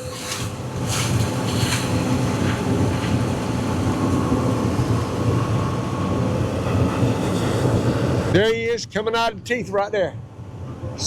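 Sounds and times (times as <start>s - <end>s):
excavator diesel engine running: 0.0s - 8.8s.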